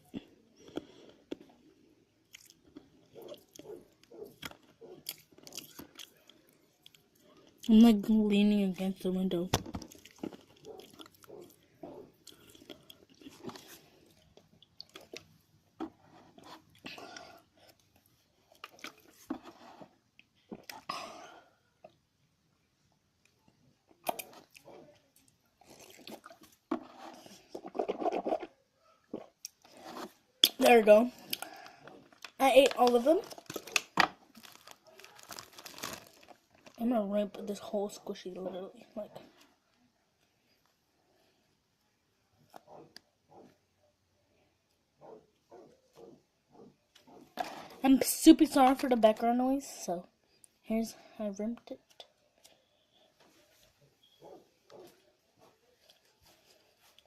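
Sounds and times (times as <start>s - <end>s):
person chewing and crunching: 0.1s - 7.7s, 9.8s - 22.0s, 23.9s - 36.8s.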